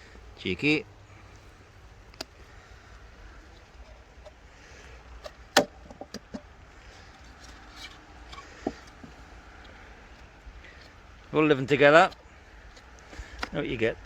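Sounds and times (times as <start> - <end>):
wood knocking on wood: 5.6 - 6.5, 8.4 - 9.2.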